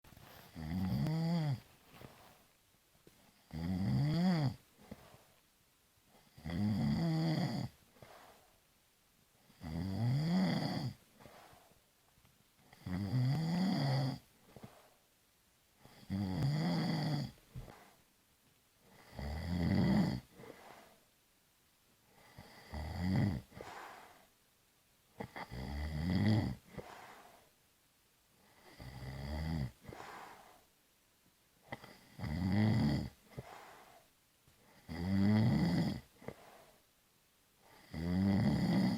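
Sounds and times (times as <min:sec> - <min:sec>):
soft breathing: 0:00.0 - 0:03.5, 0:04.6 - 0:06.4, 0:07.7 - 0:08.7, 0:10.9 - 0:12.2, 0:14.2 - 0:16.1, 0:17.3 - 0:18.1, 0:20.2 - 0:21.2, 0:23.4 - 0:24.4, 0:26.5 - 0:27.6, 0:29.7 - 0:30.8, 0:33.1 - 0:34.9, 0:36.0 - 0:37.0
person snoring: 0:00.3 - 0:01.7, 0:03.4 - 0:05.2, 0:06.2 - 0:08.4, 0:09.5 - 0:11.6, 0:12.7 - 0:14.9, 0:15.8 - 0:18.0, 0:18.9 - 0:21.0, 0:22.1 - 0:24.3, 0:25.2 - 0:27.4, 0:28.4 - 0:30.6, 0:31.7 - 0:36.8, 0:37.6 - 0:38.9.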